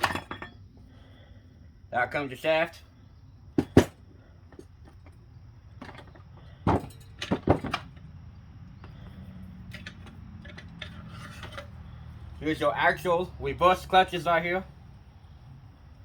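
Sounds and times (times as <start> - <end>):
metal parts knocking and clanking: 0.0 - 0.6, 3.6 - 5.2, 5.8 - 8.1, 9.7 - 11.8.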